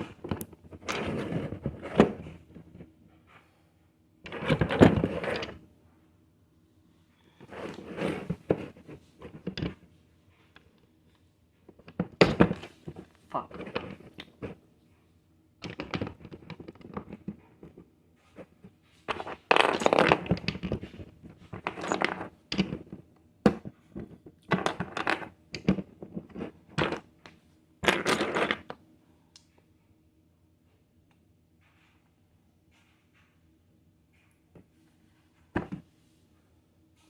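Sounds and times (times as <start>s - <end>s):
plastic pieces rattling: 19.1s - 23.0s.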